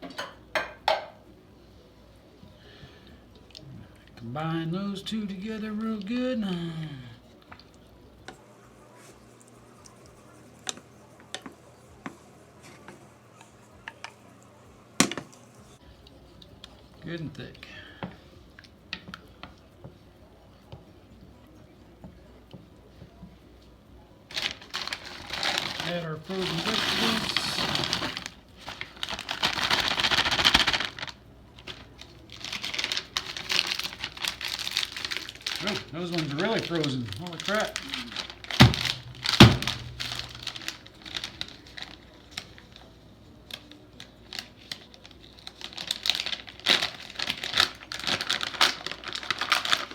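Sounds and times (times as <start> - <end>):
frozen vegetables clattering into pot: 24.3 - 42.6, 44.3 - 49.9.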